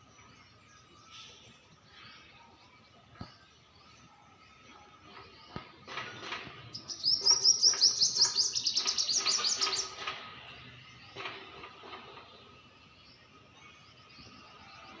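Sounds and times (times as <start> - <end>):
small bird chirping: 0.0 - 15.0.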